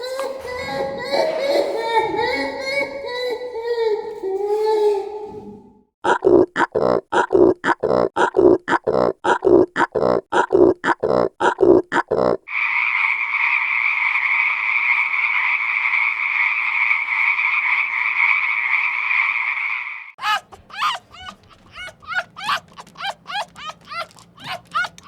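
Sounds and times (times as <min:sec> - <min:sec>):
frog-like trill: 0:06.0 - 0:25.0
low pulsed animal calls: 0:12.2 - 0:25.0
rapid short chirping: 0:20.2 - 0:25.0.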